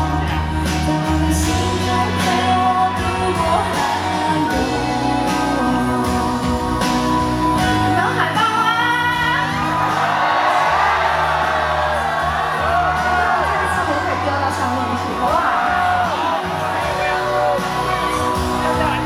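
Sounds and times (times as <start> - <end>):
woman singing with vibrato: 0.0 - 9.6
live pop band: 0.0 - 19.0.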